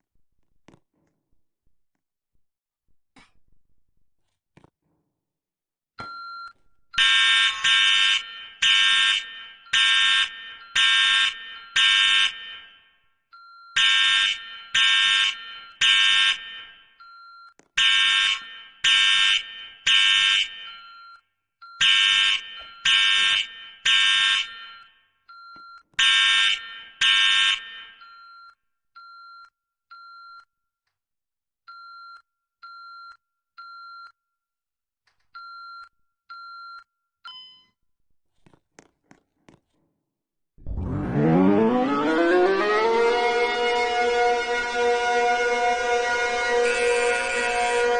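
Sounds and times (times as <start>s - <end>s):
fire alarm blaring pulses: 6.0s - 30.6s, 40.6s - 47.9s.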